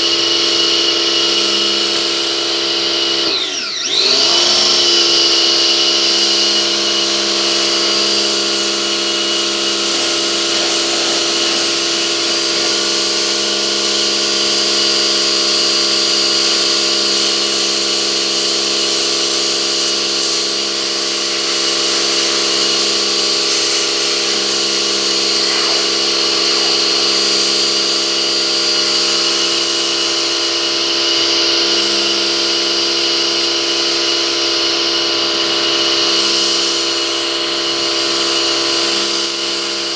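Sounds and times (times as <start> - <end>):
pressure washer motor whine: 0.0 - 39.9
water spray hissing: 9.0 - 14.6, 19.0 - 30.3.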